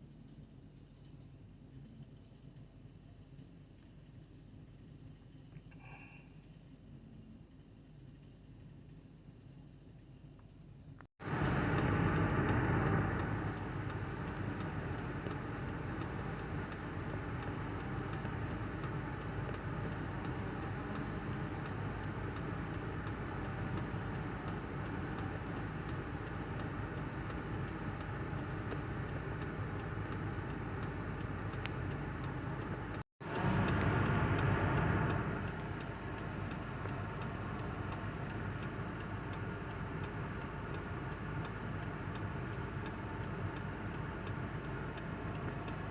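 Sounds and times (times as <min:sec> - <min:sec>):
small engine running: 0:11.2 - 0:39.2.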